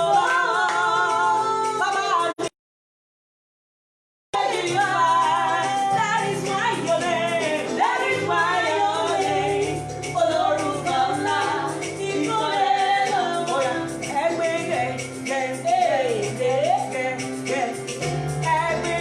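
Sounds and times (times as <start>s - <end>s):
gospel singing voices: 0.0s - 2.5s, 4.4s - 19.0s
instrumental accompaniment with bass: 4.4s - 19.0s.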